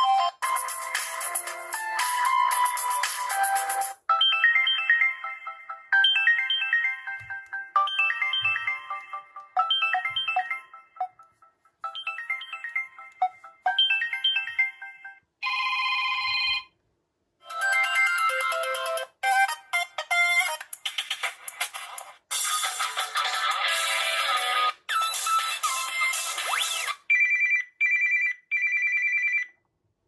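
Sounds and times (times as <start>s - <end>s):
smartphone ringtones: 4.1s - 16.7s.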